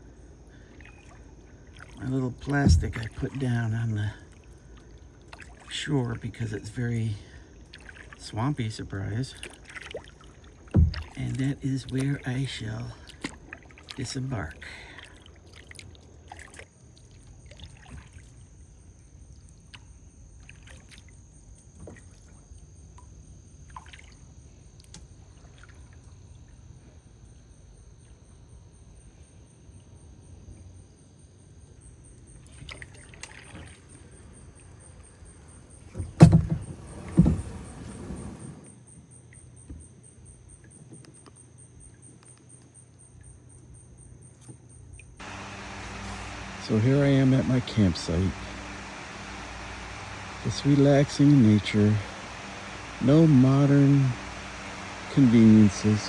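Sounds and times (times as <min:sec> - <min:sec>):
high insect trill: 0:00.0 - 0:56.0
paddle splashes and drips: 0:00.5 - 0:26.8, 0:32.2 - 0:38.7, 0:45.0 - 0:56.0
paddle knocking on hull: 0:02.5 - 0:03.2, 0:10.7 - 0:11.2, 0:36.0 - 0:38.6, 0:45.2 - 0:56.0
short scrape: 0:36.5 - 0:38.7.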